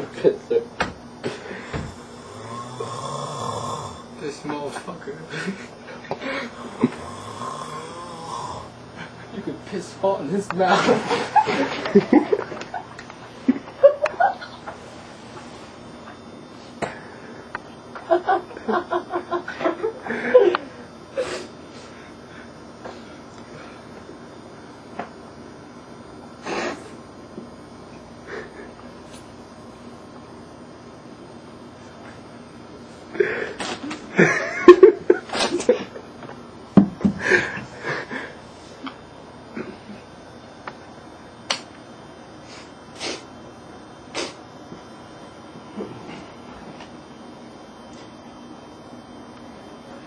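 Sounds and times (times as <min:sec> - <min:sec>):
person laughing: 0:10.6 - 0:12.9, 0:13.5 - 0:14.8, 0:18.0 - 0:21.4, 0:28.3 - 0:28.8, 0:34.1 - 0:36.1.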